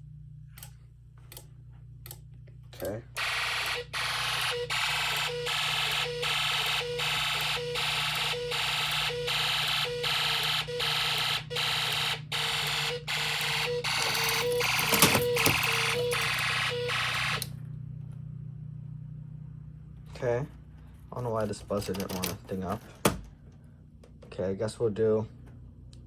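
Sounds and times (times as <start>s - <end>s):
harsh pulsing alarm: 3.1s - 17.7s.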